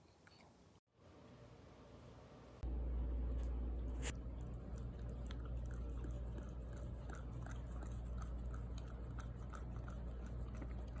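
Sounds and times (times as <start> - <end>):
dog chewing: 4.3 - 11.0.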